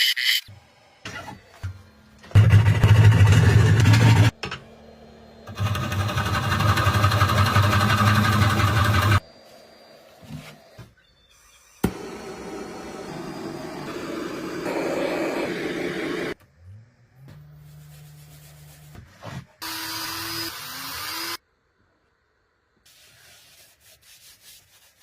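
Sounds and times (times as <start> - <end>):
motor hum: 0.5 - 10.8
power tool rising whine: 0.5 - 17.7
rush of tool noise: 5.4 - 9.2.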